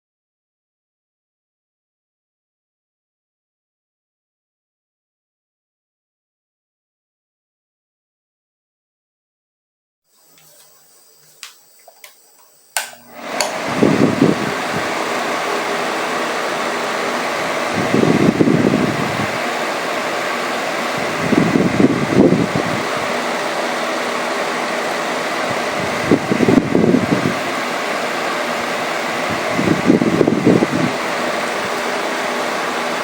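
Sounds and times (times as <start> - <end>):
table fan air rushing: 10.2 - 33.0
fan switch click: 12.8 - 13.7
low air buffeting: 13.4 - 15.2, 25.4 - 31.9.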